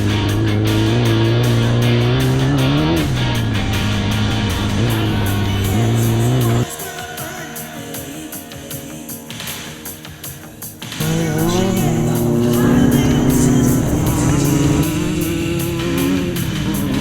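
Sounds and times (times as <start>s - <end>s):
car engine running hard: 0.0s - 6.6s, 11.0s - 17.0s
heavy rock music: 0.0s - 17.0s.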